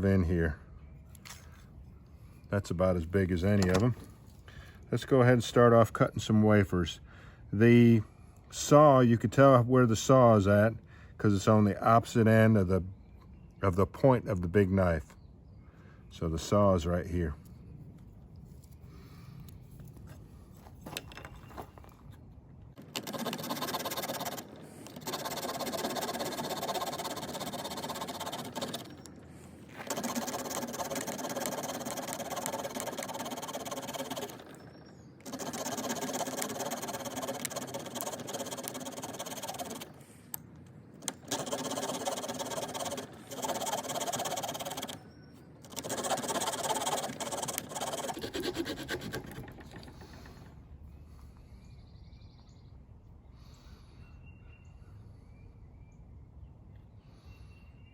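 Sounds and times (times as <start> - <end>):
small saw cutting wood: 22.8 - 40.0, 41.0 - 45.0, 45.6 - 50.5.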